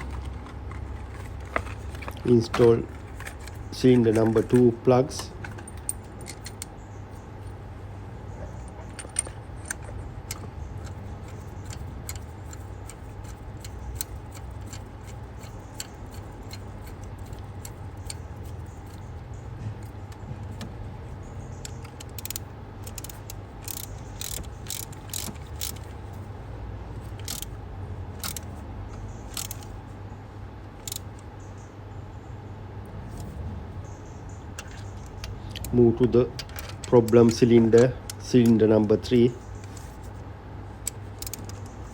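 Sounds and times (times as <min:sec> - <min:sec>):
steady low hum: 0:00.0 - 0:41.9
ratchet clicking: 0:08.9 - 0:20.2, 0:21.3 - 0:26.2, 0:27.0 - 0:27.6, 0:28.2 - 0:29.7, 0:30.8 - 0:31.2, 0:40.8 - 0:41.8.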